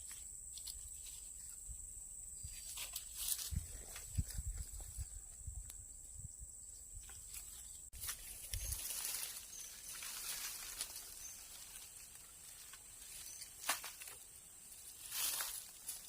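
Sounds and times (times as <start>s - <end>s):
high insect drone: 0.0s - 16.0s
light hissing rustle: 7.0s - 16.0s.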